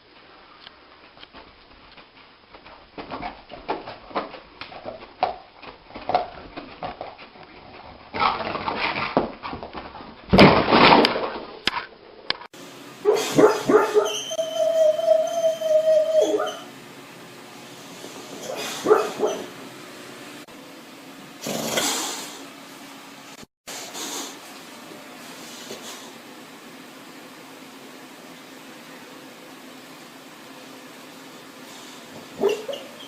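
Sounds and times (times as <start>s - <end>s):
dog whining high: 13.1s - 16.7s, 18.3s - 19.5s, 32.4s - 33.0s
dogs whimpering and yipping: 13.2s - 16.7s, 18.4s - 19.5s, 32.4s - 33.0s.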